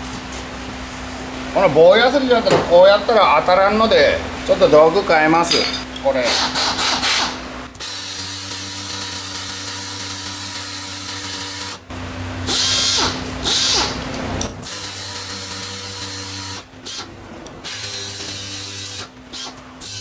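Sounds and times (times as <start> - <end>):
electric power tool running: 6.2 - 20.0.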